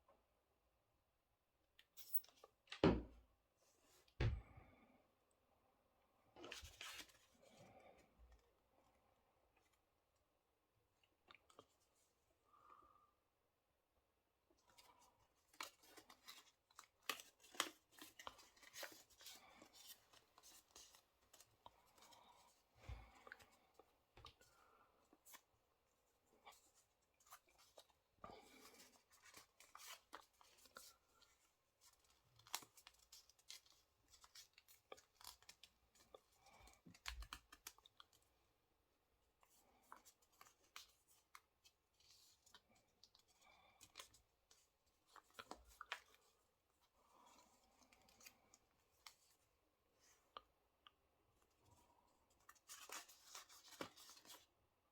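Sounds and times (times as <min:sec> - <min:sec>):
paper crackling and rustling: 0:14.7 - 0:22.2, 0:52.4 - 0:54.5.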